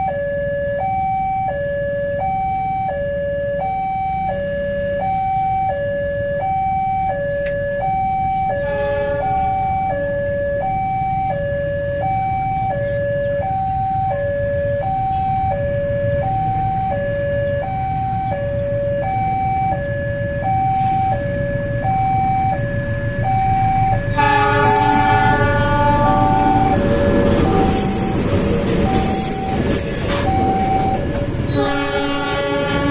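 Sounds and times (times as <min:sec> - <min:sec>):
level-crossing two-tone alarm: 0:00.0 - 0:32.9
train horn: 0:08.5 - 0:09.9, 0:24.1 - 0:30.2, 0:31.5 - 0:32.9.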